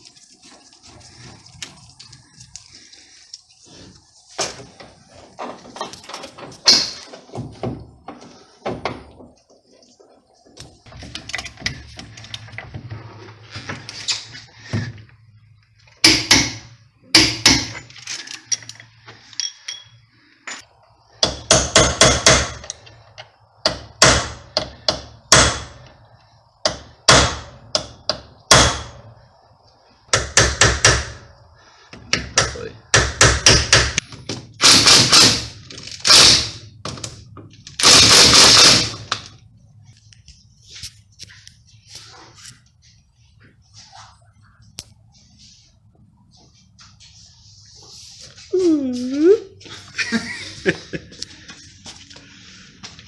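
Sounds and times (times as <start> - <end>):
metallic rattling bursts: 34.6 - 36.7, 37.7 - 39.1.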